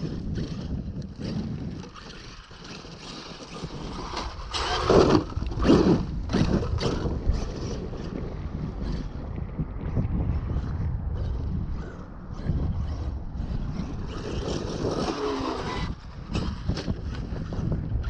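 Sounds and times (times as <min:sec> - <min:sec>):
rc truck motor under throttle: 0:00.0 - 0:18.0
tyre noise on dirt: 0:02.9 - 0:10.1.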